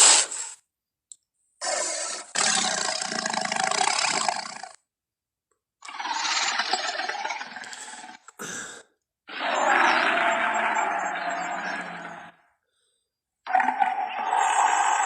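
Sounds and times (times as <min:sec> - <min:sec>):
dinosaur roaring: 0:09.3 - 0:12.4, 0:13.5 - 0:15.0.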